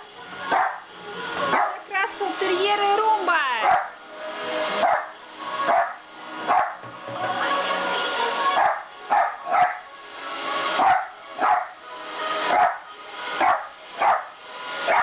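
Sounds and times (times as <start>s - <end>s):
background music: 0.0s - 15.0s
dog barking: 0.5s - 0.8s, 1.5s - 1.8s, 3.6s - 4.0s, 4.8s - 5.1s, 5.7s - 6.8s, 8.6s - 9.8s, 10.8s - 11.8s, 12.5s - 12.8s, 13.4s - 14.3s.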